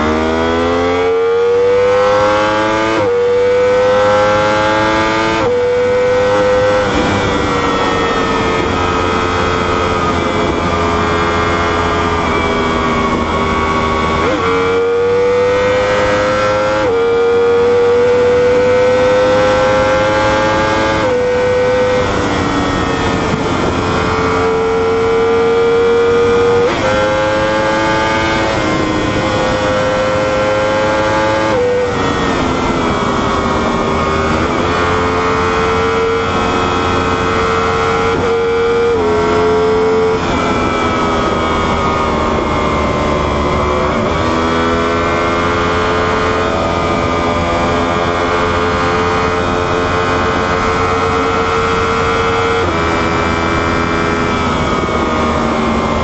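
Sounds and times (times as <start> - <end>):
motorcycle engine at high revs: 0.0 - 56.0.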